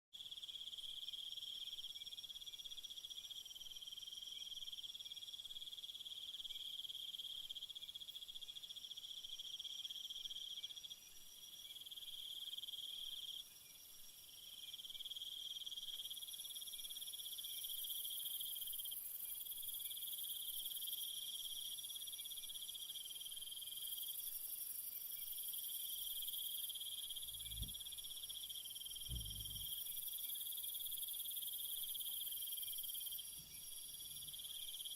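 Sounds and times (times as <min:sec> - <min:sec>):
high hissing insect song: 0:00.2 - 0:34.9
insects trilling: 0:14.7 - 0:34.9
low thumps: 0:29.0 - 0:29.7.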